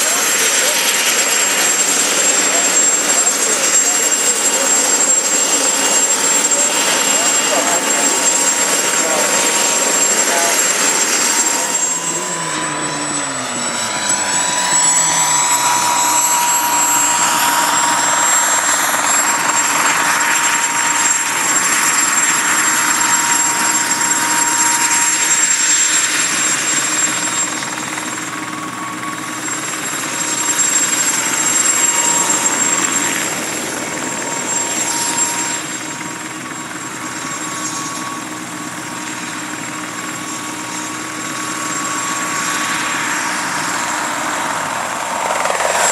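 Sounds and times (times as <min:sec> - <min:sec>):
helicopter engine whine: 0:00.0 - 0:45.9
rotor beating and rushing: 0:41.8 - 0:45.9.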